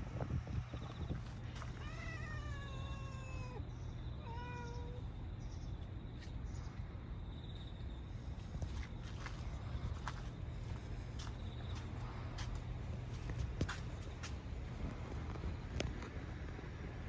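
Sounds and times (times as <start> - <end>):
steady low rumble: 0.0 - 4.2, 4.9 - 17.0
cat meowing: 1.7 - 5.2.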